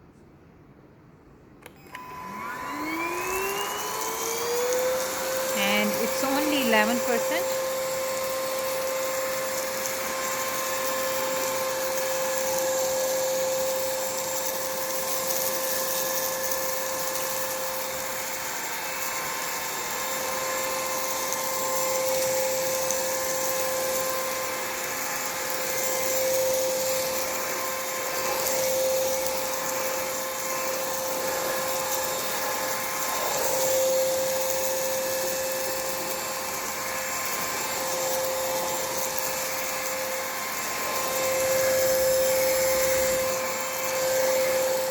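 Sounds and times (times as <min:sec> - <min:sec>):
stick vacuum cleaner running: 0:01.6 - 0:44.9.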